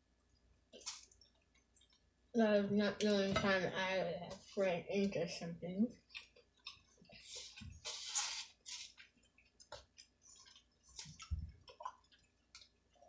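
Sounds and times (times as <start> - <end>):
food rustling: 6.0 - 13.0.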